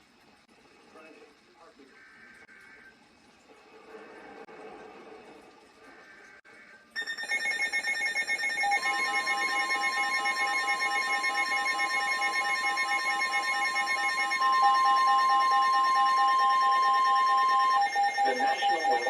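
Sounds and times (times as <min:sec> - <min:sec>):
rapid pulsing alarm beep: 0:07.0 - 0:19.0
steady high tone: 0:07.0 - 0:19.0.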